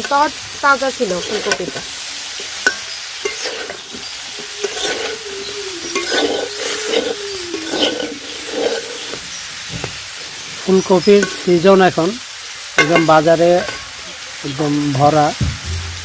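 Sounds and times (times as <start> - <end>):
vegetables sizzling in hot oil: 0.0 - 16.0
spatula scraping a pan: 1.0 - 2.0, 2.6 - 9.9, 11.0 - 11.6.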